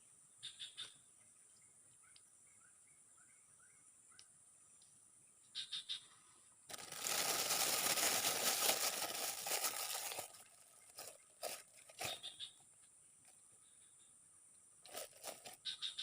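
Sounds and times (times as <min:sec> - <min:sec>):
loud rustling or crinkling: 0:06.7 - 0:12.2, 0:14.9 - 0:15.6.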